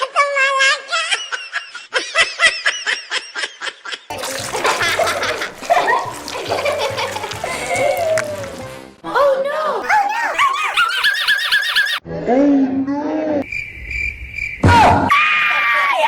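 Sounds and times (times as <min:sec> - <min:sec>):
child laughing: 0:06.4 - 0:08.2, 0:09.8 - 0:12.0
voices: 0:09.8 - 0:12.0.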